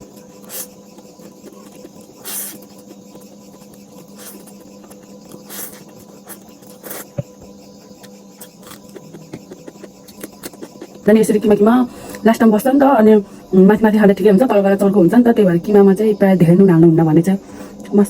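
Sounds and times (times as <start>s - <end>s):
noodles slurped: 0.0s - 12.2s
faint steady hum: 0.0s - 18.0s.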